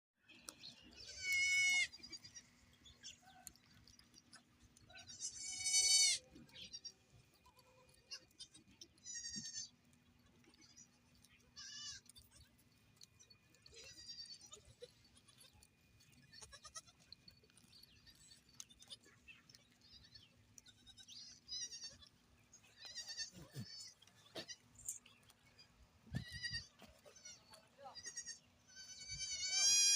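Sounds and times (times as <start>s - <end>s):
goats bleating: 1.0s - 3.2s, 4.9s - 9.7s, 11.6s - 12.4s, 13.7s - 15.6s, 16.2s - 17.0s, 20.6s - 24.7s, 26.1s - 29.9s.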